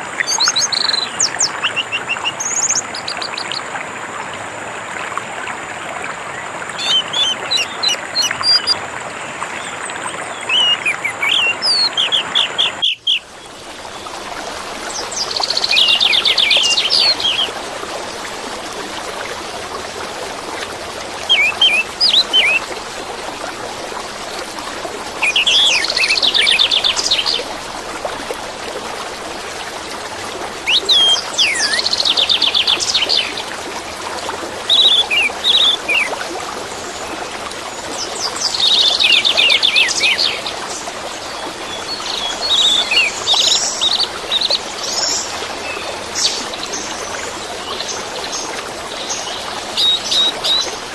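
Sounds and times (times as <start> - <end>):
running water: 0.0 - 50.9
bird chirping and trilling: 6.8 - 8.8, 10.4 - 13.3, 15.2 - 17.5, 21.3 - 22.6, 25.2 - 27.4, 30.6 - 33.3, 34.7 - 36.1, 38.5 - 40.4, 49.8 - 50.8.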